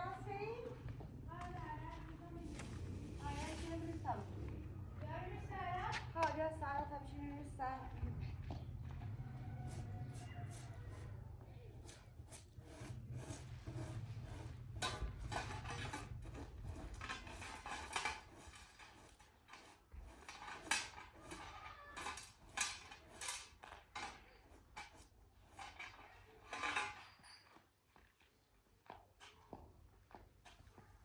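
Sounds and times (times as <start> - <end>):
low hum: 0.0 - 10.9.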